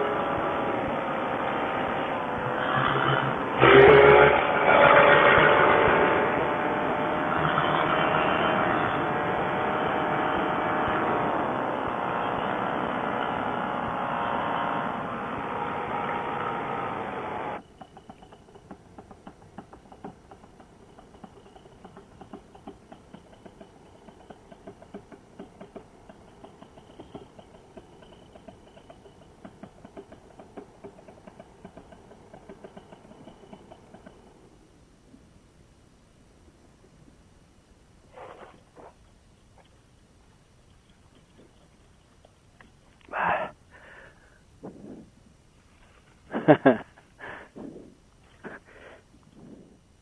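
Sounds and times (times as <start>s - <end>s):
paramotor engine running: 0.0s - 34.4s.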